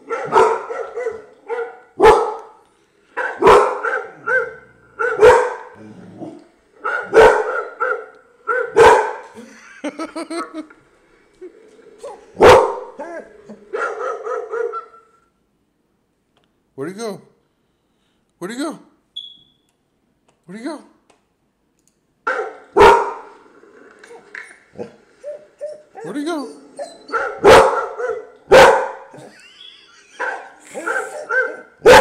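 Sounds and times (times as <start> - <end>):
dog barking deeply: 0.0 - 2.6, 3.2 - 9.2, 12.0 - 13.0, 13.6 - 14.9, 22.3 - 23.3, 27.1 - 29.2, 30.2 - 32.0.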